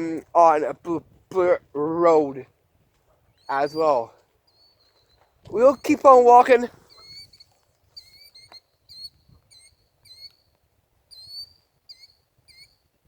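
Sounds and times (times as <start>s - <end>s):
small animal chirping: 3.3s - 6.0s, 6.8s - 12.9s.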